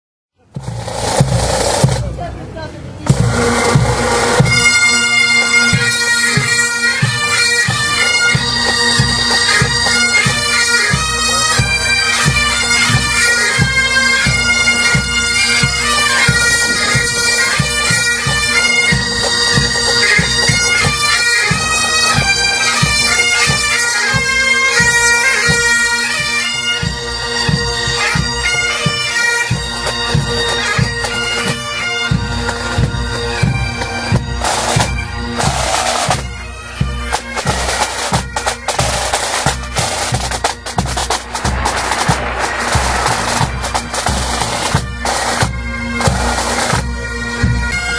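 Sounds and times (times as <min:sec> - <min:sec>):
drums beating: 0:00.5 - 0:22.9, 0:32.1 - 0:47.6
bagpipes playing a tune: 0:03.0 - 0:47.9.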